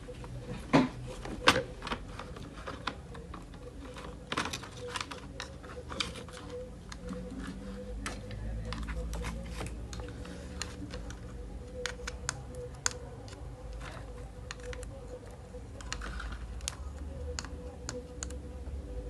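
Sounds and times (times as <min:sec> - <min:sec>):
steady faint hum: 0:00.0 - 0:19.0
small tools clicking and tapping: 0:08.0 - 0:15.2.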